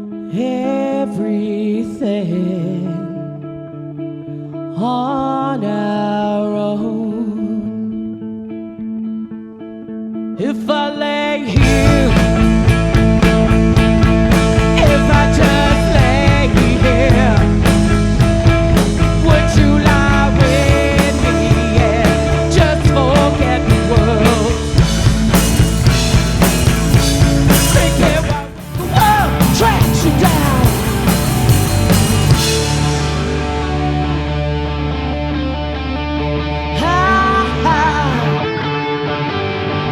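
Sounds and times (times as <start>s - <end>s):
live rock band playing: 11.6s - 39.9s.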